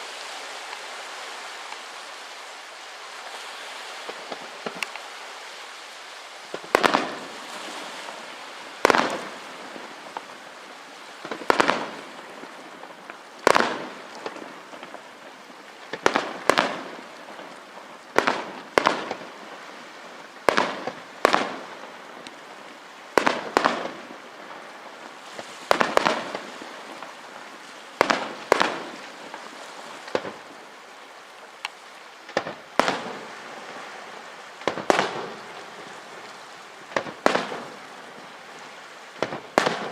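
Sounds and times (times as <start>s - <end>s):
continuous hiss: 0.0s - 39.9s
fireworks bangs: 6.5s - 10.4s, 11.2s - 19.6s, 20.4s - 22.0s, 23.1s - 30.6s, 32.3s - 39.9s.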